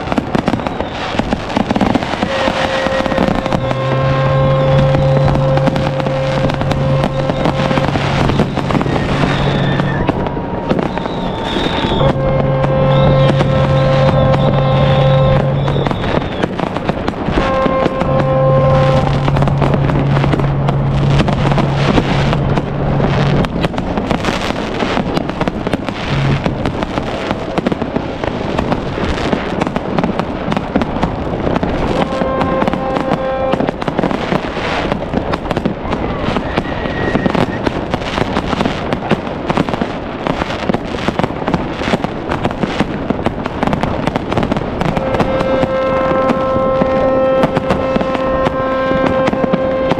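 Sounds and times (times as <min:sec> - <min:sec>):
fireworks crackling and banging: 0:00.0 - 0:49.9
long held low tone: 0:02.2 - 0:16.4.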